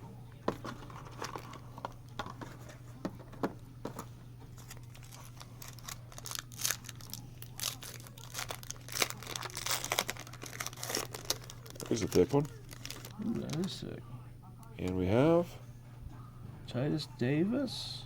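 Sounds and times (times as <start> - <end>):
card pack wrapper tearing and crinkling: 4.6 - 13.7.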